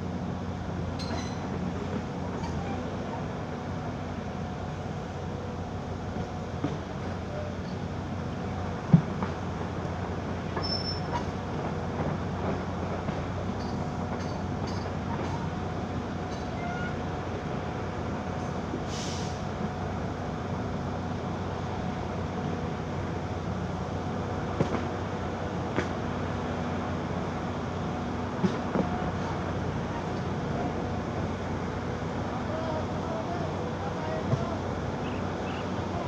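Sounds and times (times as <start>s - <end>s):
backhoe diesel engine running: 0.0s - 36.0s
brief hiss: 18.8s - 19.4s.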